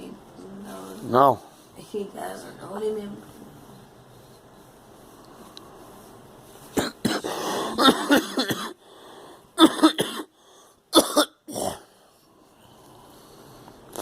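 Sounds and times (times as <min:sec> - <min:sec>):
girl coughing: 0:06.8 - 0:08.8, 0:09.6 - 0:10.3, 0:10.9 - 0:11.9.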